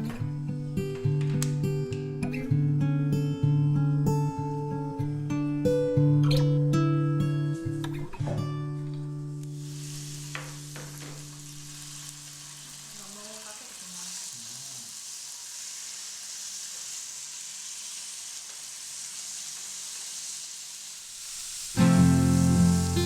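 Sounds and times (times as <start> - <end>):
food sizzling in a frying pan: 9.0 - 23.0.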